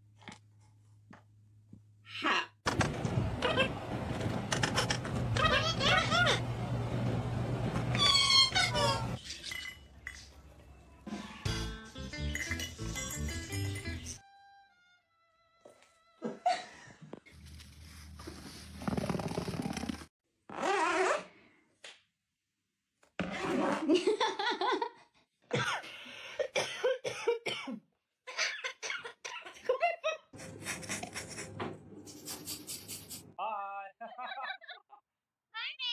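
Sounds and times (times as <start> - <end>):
person coughing: 25.5 - 27.8.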